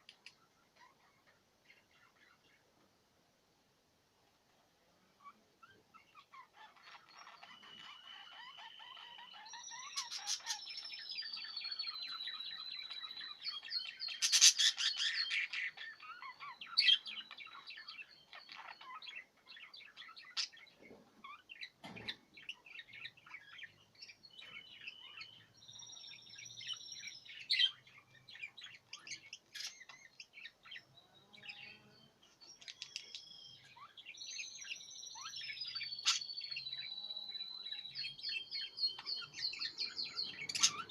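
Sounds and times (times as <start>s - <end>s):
budgerigars chattering and warbling: 5.2s - 25.5s, 32.6s - 36.9s, 37.5s - 40.9s.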